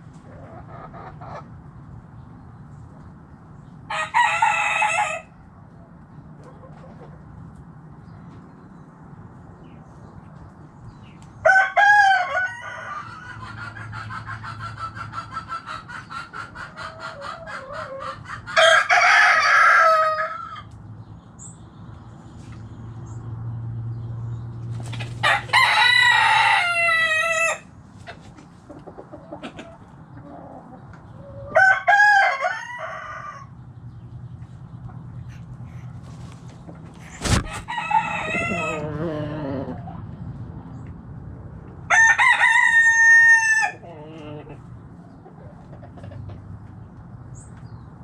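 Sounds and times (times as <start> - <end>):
roosters crowing: 3.8 - 5.5, 11.4 - 20.7, 24.9 - 27.8, 28.7 - 33.6, 37.0 - 40.0, 41.7 - 44.6
hen clucking rapidly: 13.0 - 18.6.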